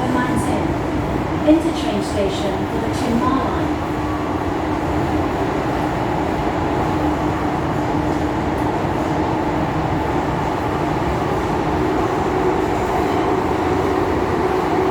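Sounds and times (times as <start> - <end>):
train drive hum: 0.0 - 14.9
train wheels rumbling on rail: 0.0 - 14.9.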